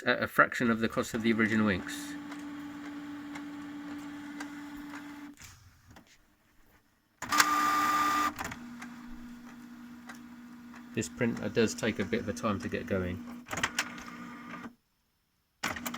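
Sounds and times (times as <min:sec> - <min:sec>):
printer mechanism humming: 0:00.7 - 0:05.4, 0:07.2 - 0:14.8, 0:15.6 - 0:15.9
printer whirring with whine: 0:00.9 - 0:05.4, 0:07.3 - 0:14.8.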